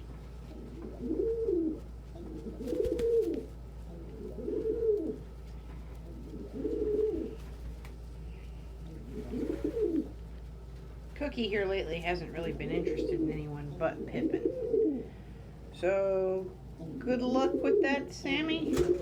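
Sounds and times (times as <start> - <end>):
pigeon cooing: 0.0 - 7.6, 8.7 - 10.2, 12.6 - 15.4, 16.8 - 19.0.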